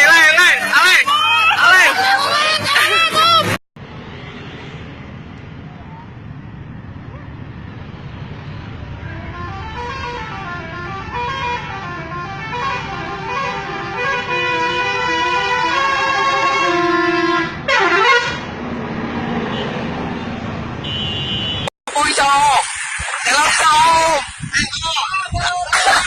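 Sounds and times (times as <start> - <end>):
musical bus air horn: 9.0 - 18.5.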